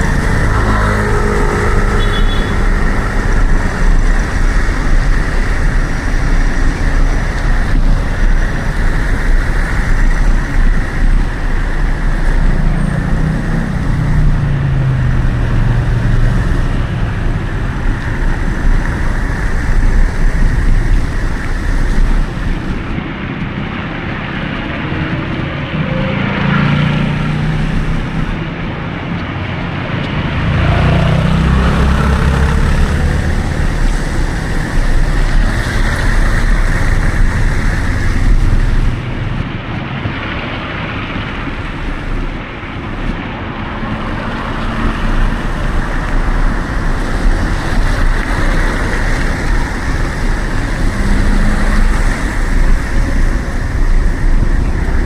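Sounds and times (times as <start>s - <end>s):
engine hum of passing vehicles: 0.0s - 55.0s
road traffic: 0.0s - 55.0s
wind buffeting microphone: 26.9s - 55.0s.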